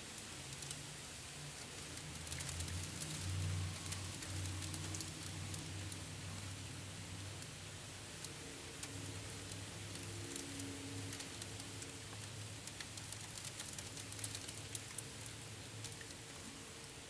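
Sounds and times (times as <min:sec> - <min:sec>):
low steady hum: 0:00.0 - 0:17.0
hail and rain falling: 0:00.2 - 0:06.5, 0:08.8 - 0:16.2
hailstones ticking on hard surfaces: 0:01.6 - 0:06.0, 0:08.2 - 0:16.2.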